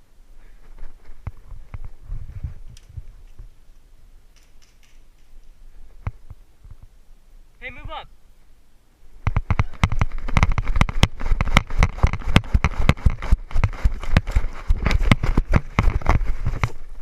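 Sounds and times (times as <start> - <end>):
heavy thumps on microphone: 9.2 - 16.8
running footsteps: 9.3 - 17.0.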